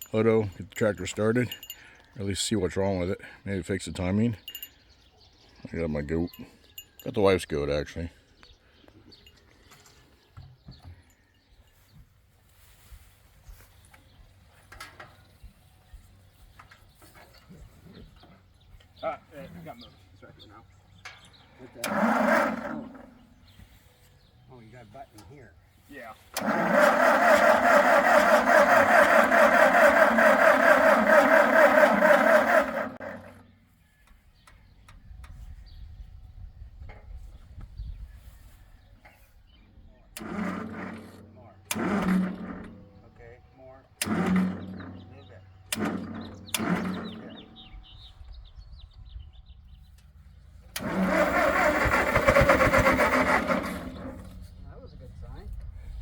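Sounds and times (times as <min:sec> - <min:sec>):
tractor engine cranking on starter: 0:00.0 - 0:02.5, 0:21.2 - 0:23.9, 0:26.2 - 0:33.6, 0:40.1 - 0:48.0, 0:49.8 - 0:55.7.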